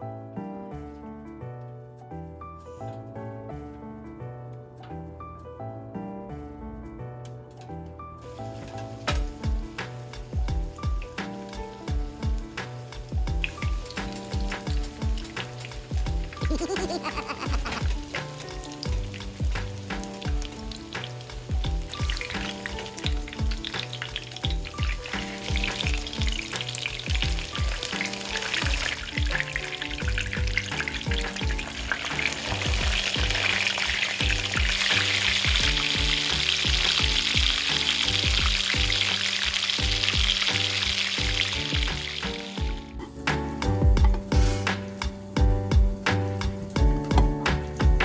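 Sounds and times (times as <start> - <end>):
background music with steady beat: 0.0 - 48.0
food sizzling in hot oil: 8.2 - 45.3.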